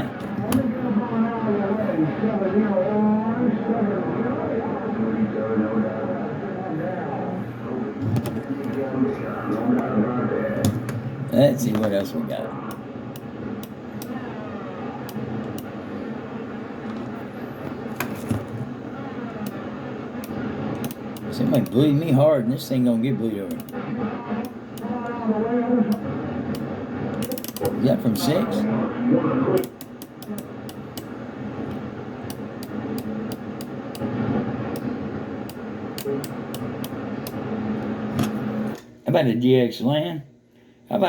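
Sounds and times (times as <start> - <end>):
faint unreadable voices: 0.0 - 38.8
radio static hiss: 0.0 - 39.6
sharp radio clicks: 15.0 - 15.8, 19.4 - 21.9, 23.4 - 25.2, 25.8 - 27.9, 29.5 - 38.9
sharp clicks: 23.5 - 23.8.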